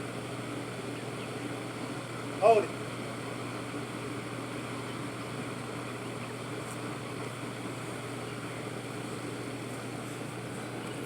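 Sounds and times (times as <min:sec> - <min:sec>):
electric fan running: 0:00.0 - 0:11.0.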